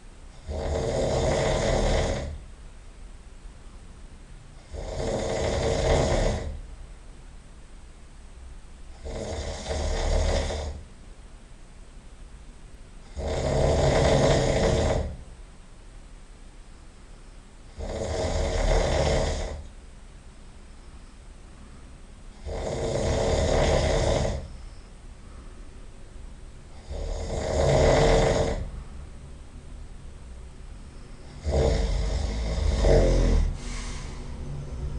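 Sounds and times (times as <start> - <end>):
person snoring loudly: 0.3 - 2.4, 4.6 - 6.6, 8.9 - 10.8, 13.0 - 15.2, 17.7 - 19.7, 22.3 - 24.6, 26.7 - 28.7, 31.2 - 34.9
quiet breathing: 20.6 - 26.0, 26.6 - 29.4, 30.6 - 34.9.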